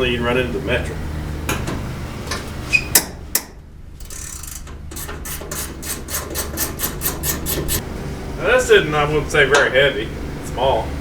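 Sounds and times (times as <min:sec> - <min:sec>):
ratchet wrench clicking: 0:04.0 - 0:07.8.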